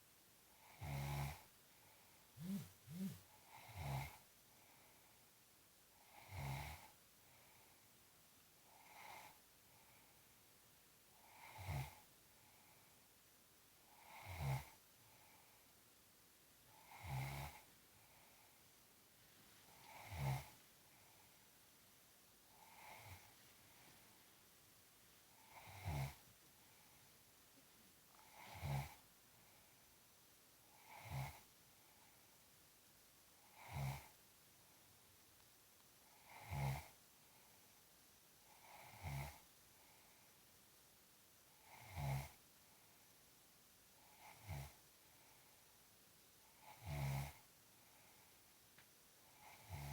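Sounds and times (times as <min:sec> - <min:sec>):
rasping snores: 0:00.6 - 0:01.4, 0:02.4 - 0:04.2, 0:11.3 - 0:12.0, 0:14.0 - 0:14.8, 0:16.8 - 0:17.6, 0:19.8 - 0:20.6, 0:25.4 - 0:26.2, 0:28.2 - 0:29.0, 0:30.8 - 0:31.4, 0:33.5 - 0:34.1, 0:36.2 - 0:37.0, 0:38.6 - 0:39.4, 0:41.6 - 0:42.4, 0:44.1 - 0:44.8, 0:46.6 - 0:47.4, 0:49.4 - 0:49.9
person snoring: 0:02.4 - 0:04.1.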